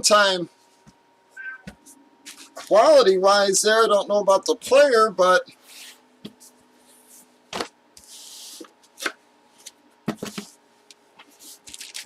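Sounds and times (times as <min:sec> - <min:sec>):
packaging rustle: 0:11.3 - 0:12.0.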